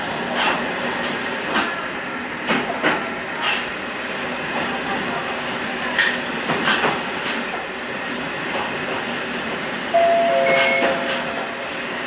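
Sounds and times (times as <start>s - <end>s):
train rolling rumble: 0.0s - 12.0s
steady pitched tone: 10.0s - 12.0s.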